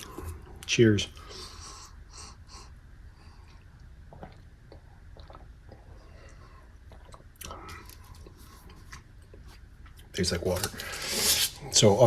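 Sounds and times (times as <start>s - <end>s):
low room hum: 0.0s - 12.0s
person drinking and swallowing: 3.4s - 9.5s.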